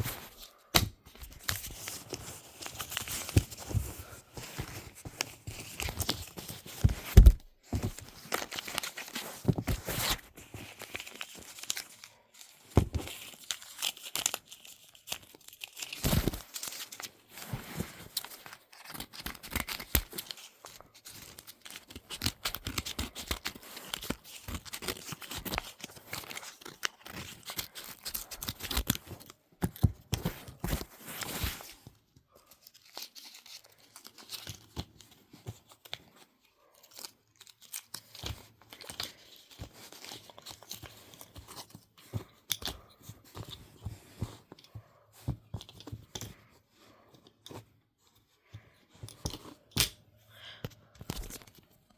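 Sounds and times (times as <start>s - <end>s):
packaging tearing and crinkling: 5.4s - 17.1s.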